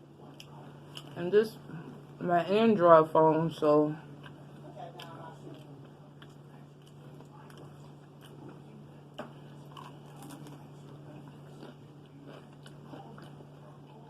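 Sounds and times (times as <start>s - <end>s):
steady low hum: 0.0s - 14.0s
person chewing food: 0.2s - 1.2s, 4.1s - 14.0s.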